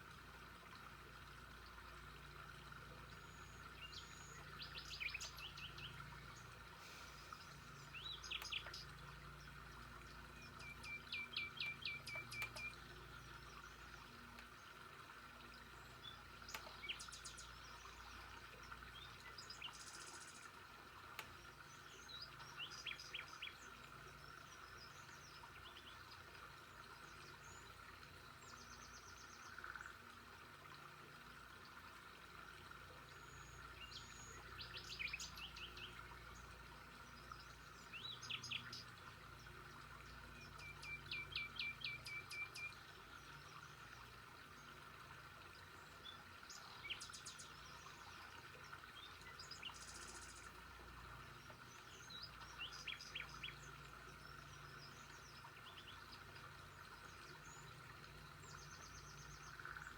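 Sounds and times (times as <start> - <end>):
faint outdoor ambience: 0.0 - 59.9
birds chirping: 2.8 - 14.5.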